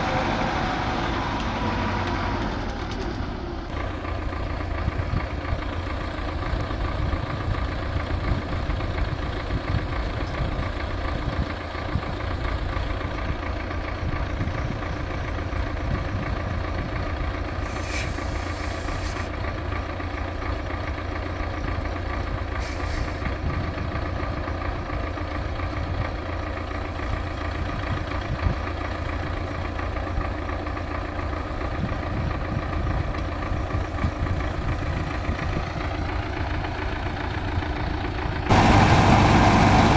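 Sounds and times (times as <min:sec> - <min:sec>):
tractor engine running: 0:00.0 - 0:39.9
short hisses: 0:17.6 - 0:19.3, 0:22.6 - 0:23.2.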